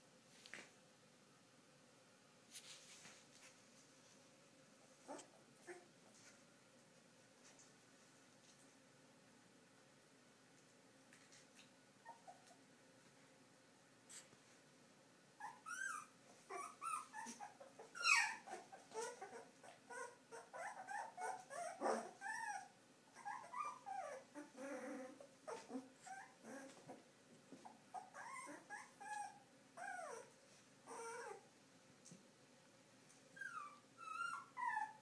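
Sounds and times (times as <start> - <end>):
puppies whimpering: 15.4 - 27.0, 27.7 - 30.3, 33.4 - 35.0.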